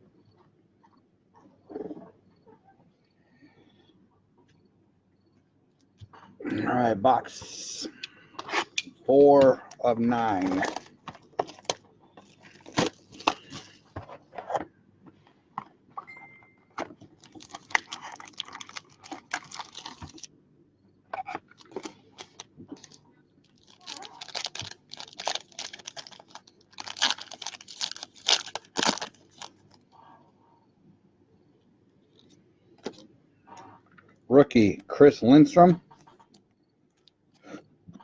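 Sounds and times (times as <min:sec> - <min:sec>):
plastic wrapping tearing and crinkling: 0:10.4 - 0:13.8, 0:17.2 - 0:20.3, 0:21.6 - 0:29.8
packaging clicks and knocks: 0:10.4 - 0:14.0, 0:16.8 - 0:20.3, 0:21.4 - 0:29.5.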